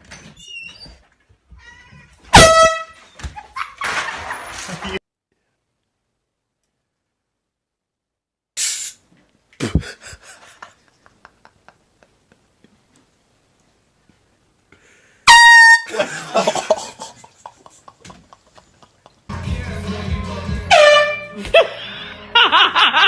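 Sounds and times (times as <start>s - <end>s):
air horn blast: 2.3s - 3.0s, 15.3s - 15.9s, 20.6s - 21.4s
brief hiss: 8.6s - 9.0s.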